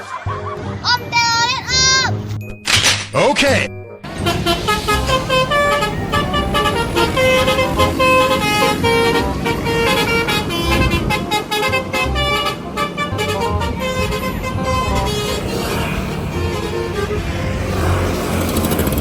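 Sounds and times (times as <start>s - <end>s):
vehicle engine rumble: 4.0s - 19.0s
bus horn playing melody: 4.1s - 19.0s.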